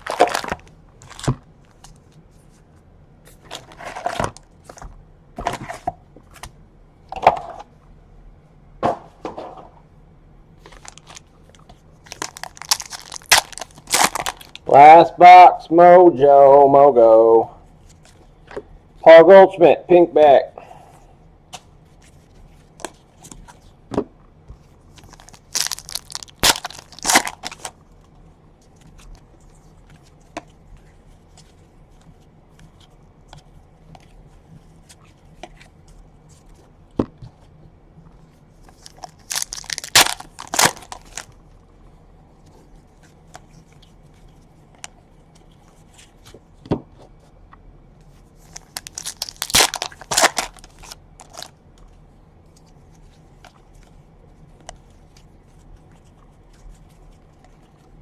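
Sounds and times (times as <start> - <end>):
wrappers torn and crinkled: 0.0 - 1.4, 10.7 - 11.3, 12.0 - 14.8, 25.0 - 27.8, 38.7 - 41.4, 48.4 - 51.6.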